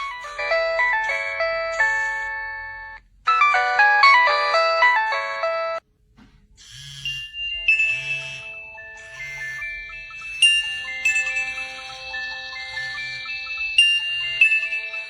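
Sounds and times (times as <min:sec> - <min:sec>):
phone ringtone melody: 0:00.0 - 0:05.8, 0:06.8 - 0:15.0
ringtone with pulsing beat: 0:00.0 - 0:05.8, 0:06.8 - 0:15.0.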